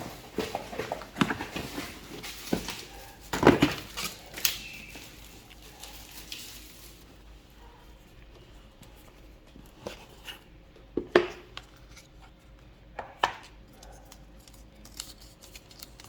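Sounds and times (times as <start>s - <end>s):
boxes handled on hard surface: 0.0s - 5.2s.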